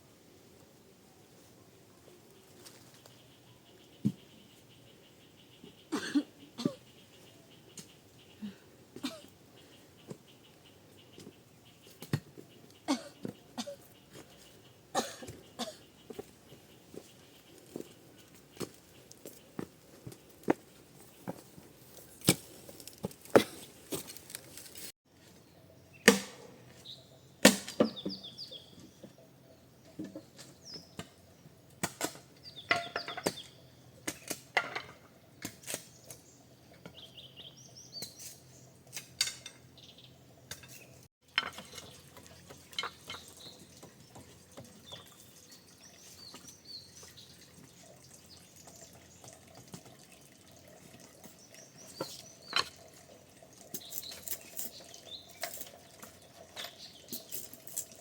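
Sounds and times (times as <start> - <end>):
water splashing and dripping: 41.6 - 58.0.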